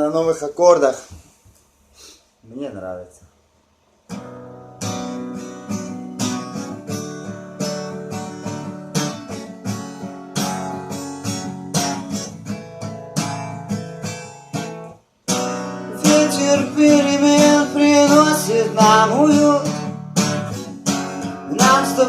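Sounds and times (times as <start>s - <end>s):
acoustic guitar strumming chords: 4.1s - 22.0s.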